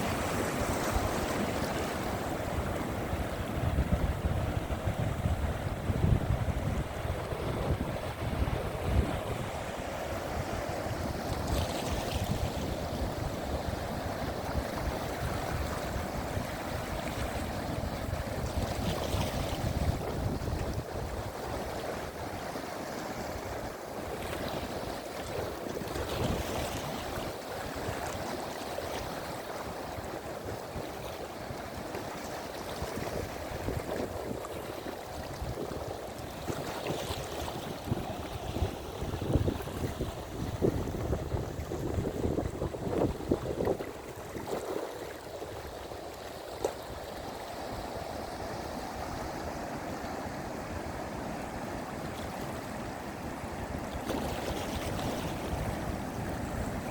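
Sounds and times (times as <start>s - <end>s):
wind buffeting microphone: 0.0s - 22.2s, 32.7s - 46.1s, 52.3s - 56.9s
sea surf washing onto shore: 0.0s - 56.9s.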